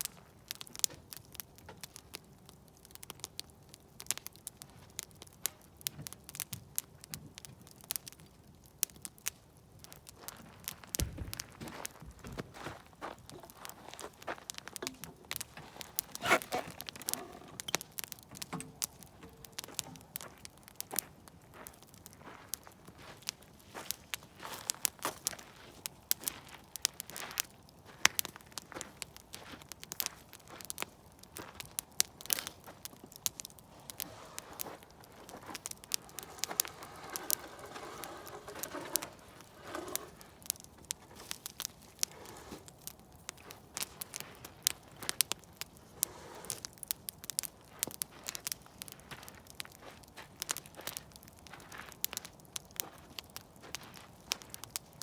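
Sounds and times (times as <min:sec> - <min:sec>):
campfire crackling: 0:00.0 - 0:55.0
hiss of flames: 0:32.2 - 0:47.4.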